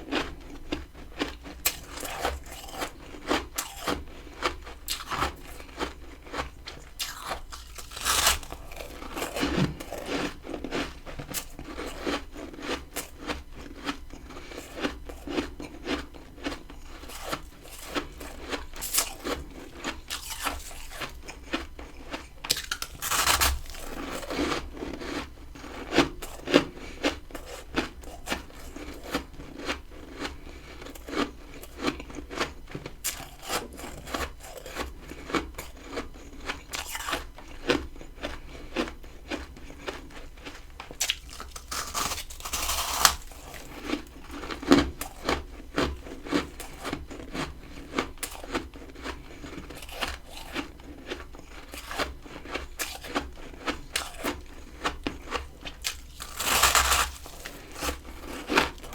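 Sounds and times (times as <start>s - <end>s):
crunching of frost being chewed: 0.0s - 58.9s.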